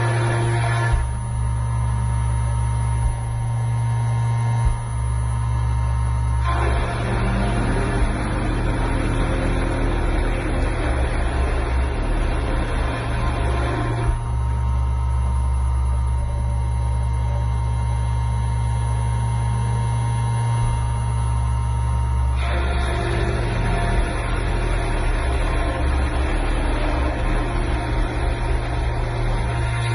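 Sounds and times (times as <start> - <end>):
rough mechanical noise: 0.0 - 18.1, 19.0 - 29.9
machine hum and whine: 0.0 - 29.9.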